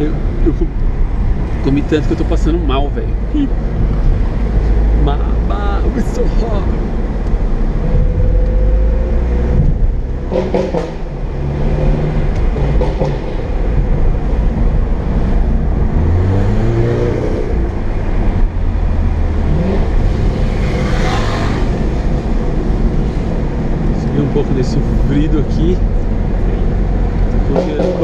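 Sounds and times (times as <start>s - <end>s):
car engine and road noise: 0.0s - 28.0s
engine revving under acceleration: 7.2s - 14.4s, 15.0s - 28.0s.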